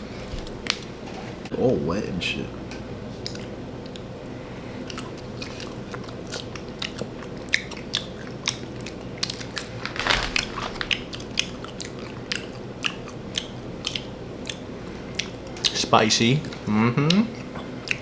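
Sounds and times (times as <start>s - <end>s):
crunchy snack being chewed: 9.6s - 11.2s.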